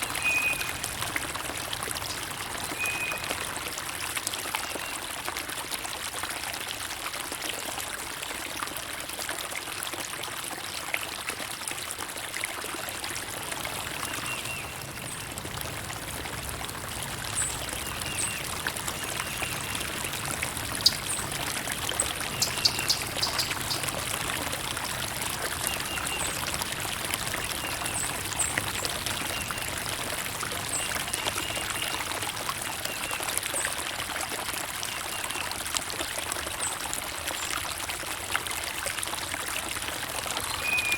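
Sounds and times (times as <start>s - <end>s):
stream trickling: 0.0s - 40.9s
high bird chirps: 22.3s - 23.8s.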